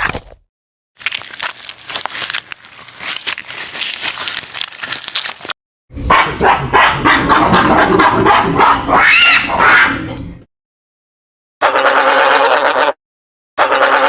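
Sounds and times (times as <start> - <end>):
faint crunching: 1.0 - 5.6
dog barking loudly: 6.1 - 10.0.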